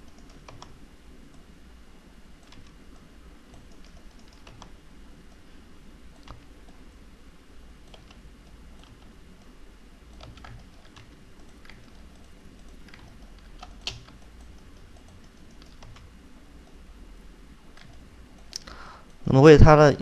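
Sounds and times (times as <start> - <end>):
computer keyboard and mouse clicks: 0.0 - 1.4, 2.4 - 5.4, 6.1 - 6.8, 7.8 - 9.5, 10.1 - 16.8, 17.7 - 18.7
low steady hum: 0.0 - 20.0.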